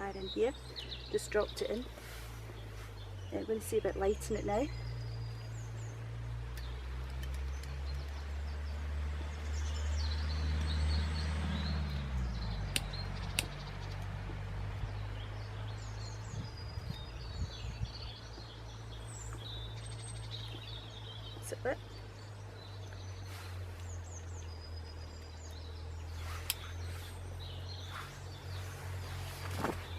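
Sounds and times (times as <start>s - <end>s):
birds chirping: 0.0s - 29.9s
sharp clicks: 12.7s - 14.1s.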